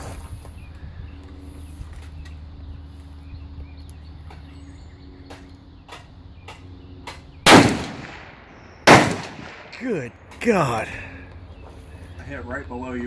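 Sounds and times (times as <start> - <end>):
steady low hum: 0.0 - 13.0
rifle shot with echo: 7.5 - 9.9.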